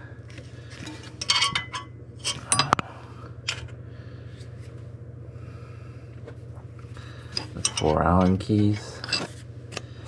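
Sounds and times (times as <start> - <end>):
steady low hum: 0.0 - 10.0
small metal parts clinking: 1.1 - 2.8, 7.3 - 9.8.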